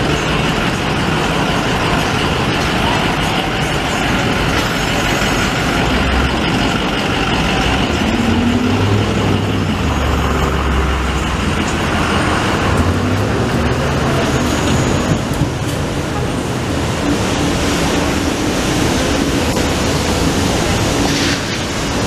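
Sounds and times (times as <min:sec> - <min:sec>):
city traffic noise: 0:00.0 - 0:22.0
heavy vehicle engine rumble: 0:00.0 - 0:22.0.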